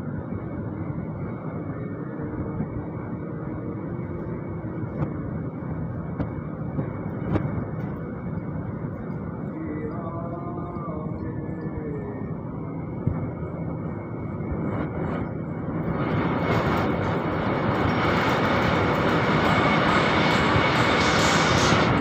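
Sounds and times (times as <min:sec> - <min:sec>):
metal lathe running: 0:15.9 - 0:22.0.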